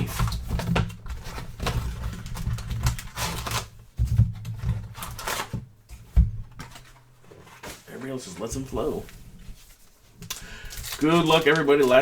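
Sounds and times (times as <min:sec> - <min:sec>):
packing tape ripping: 0:00.0 - 0:03.8, 0:04.9 - 0:05.6, 0:10.2 - 0:12.0
cardboard rustling: 0:00.0 - 0:12.0.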